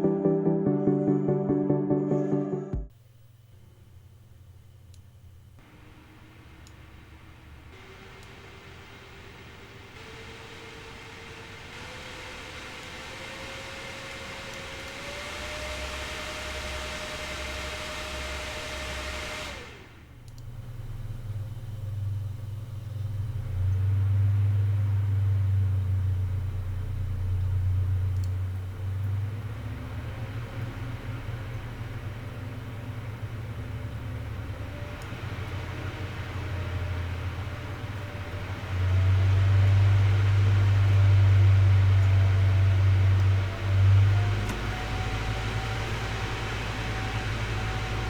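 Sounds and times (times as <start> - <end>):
cooling fans humming: 3.0 - 48.0.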